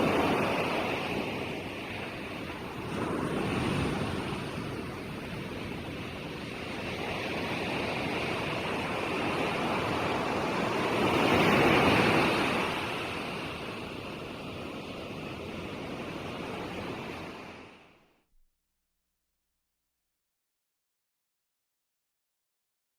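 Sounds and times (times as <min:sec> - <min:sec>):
ocean waves washing in: 0:00.0 - 0:18.0.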